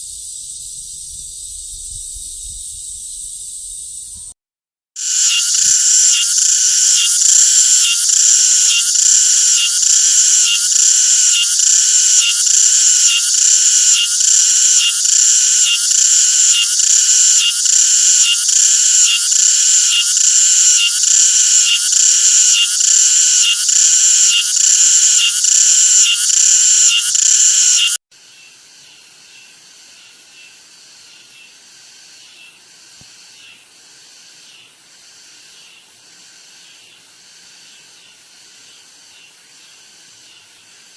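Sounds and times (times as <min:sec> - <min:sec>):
cicada buzzing in pulses: 0:00.0 - 0:04.3, 0:05.0 - 0:40.9
faint cicada buzz: 0:00.0 - 0:04.4, 0:05.0 - 0:40.9.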